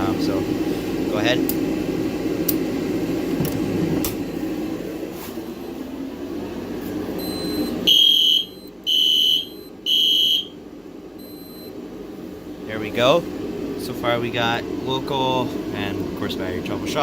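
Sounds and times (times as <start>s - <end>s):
heater humming: 0.0s - 17.0s
fire alarm horn blasts: 7.2s - 10.6s.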